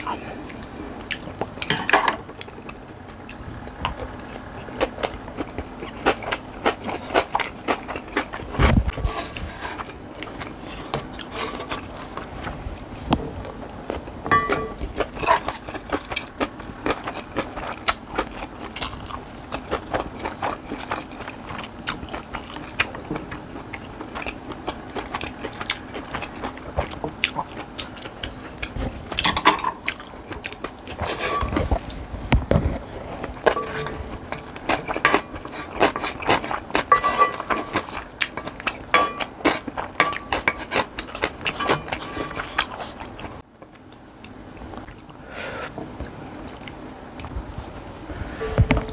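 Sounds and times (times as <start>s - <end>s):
person chewing crunchy food: 0.0s - 45.3s
low thumps: 48.2s - 48.9s.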